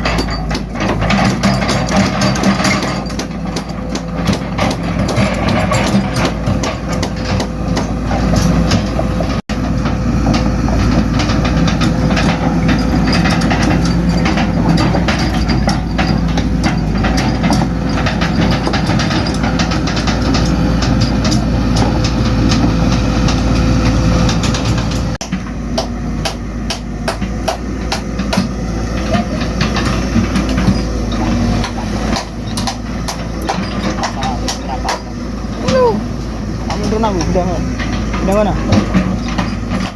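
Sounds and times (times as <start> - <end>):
excavator diesel engine: 0.0 - 39.9
bucket scraping road surface: 27.2 - 39.9.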